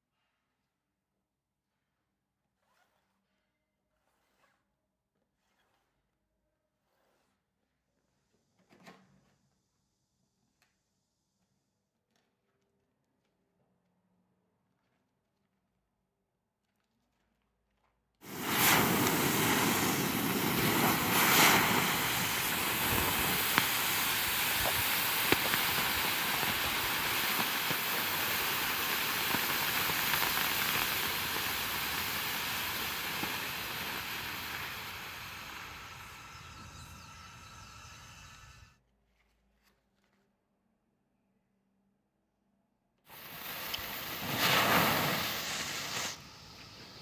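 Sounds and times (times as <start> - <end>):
small pops: 18.2 - 38.4, 43.1 - 47.0
smoke hissing out: 18.2 - 38.8, 43.1 - 47.0.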